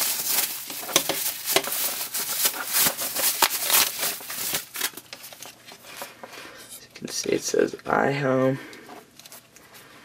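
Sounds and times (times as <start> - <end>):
packaging rustling and crinkling: 0.0 - 6.3.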